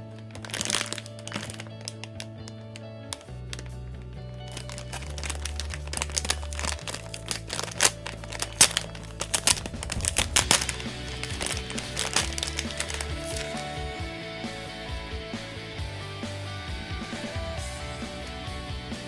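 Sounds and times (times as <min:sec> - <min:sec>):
background music with bass: 0:00.0 - 0:19.0
plastic packaging crinkling: 0:00.1 - 0:03.8, 0:04.5 - 0:13.9.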